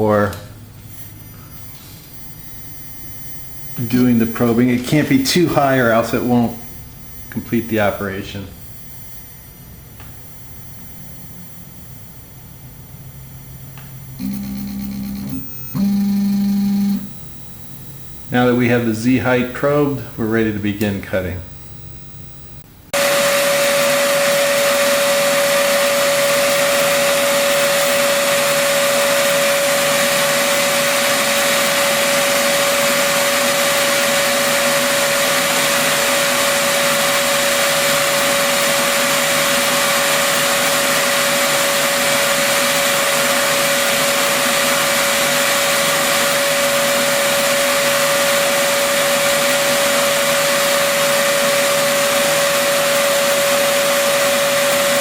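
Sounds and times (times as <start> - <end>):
router spindle motor whine: 21.6 - 55.0.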